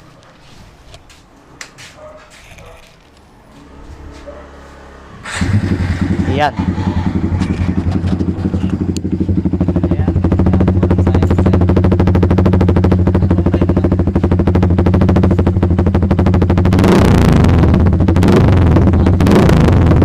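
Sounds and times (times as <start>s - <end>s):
motorcycle engine popping idle: 7.1s - 20.0s.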